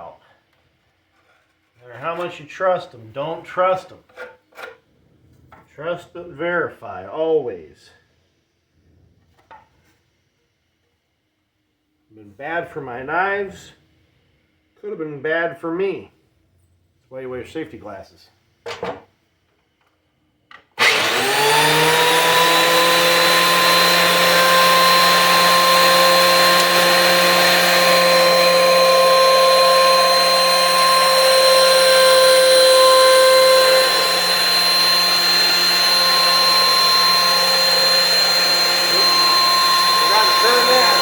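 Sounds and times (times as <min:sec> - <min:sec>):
thickness planer motor whine: 0:20.8 - 0:41.0.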